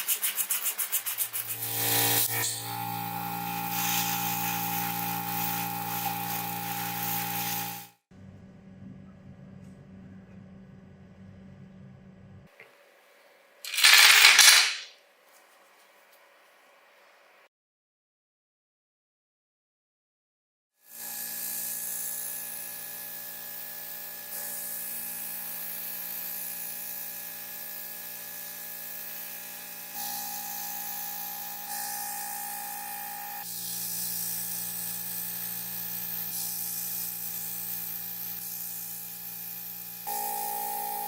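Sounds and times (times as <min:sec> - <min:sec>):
small motor humming: 0:01.2 - 0:08.0, 0:20.9 - 0:41.0
spraying hiss: 0:03.4 - 0:07.9.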